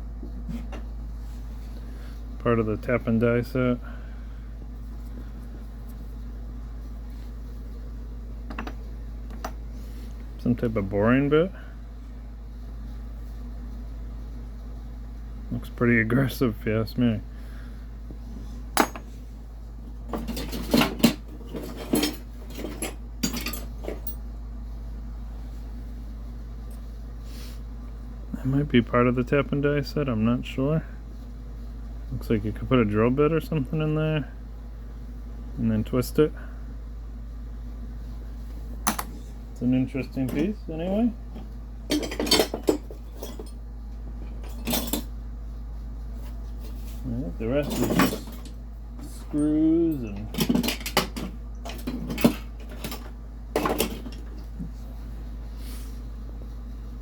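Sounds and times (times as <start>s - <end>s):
steady low hum: 0.0s - 57.0s
metal tools clinking and clattering: 20.2s - 24.2s, 41.9s - 43.6s, 47.6s - 48.6s.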